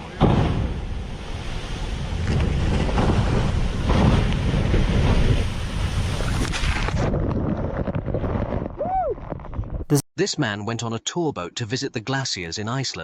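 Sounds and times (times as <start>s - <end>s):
rough sea water rushing: 0.0s - 7.8s
wind buffeting microphone: 0.0s - 9.9s.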